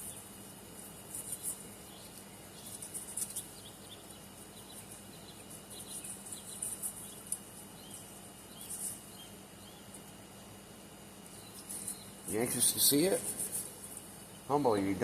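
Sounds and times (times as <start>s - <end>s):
insects buzzing: 0.0s - 15.0s
low steady hum: 0.0s - 15.0s
bird chirps: 1.1s - 10.0s, 11.2s - 13.1s.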